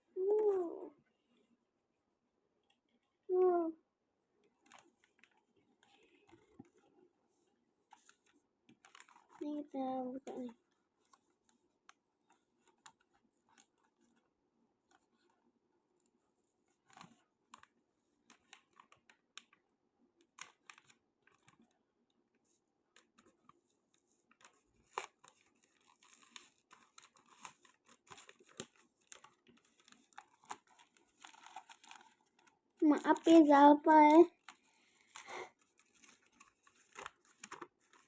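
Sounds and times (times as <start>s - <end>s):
packaging rustling: 24.2s - 38.0s
package being opened by hand: 24.3s - 38.0s.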